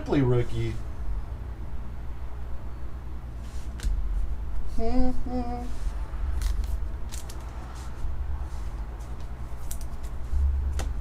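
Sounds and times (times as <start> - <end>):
low hum: 0.0 - 11.0
cards and wrapper rustling: 6.4 - 7.8.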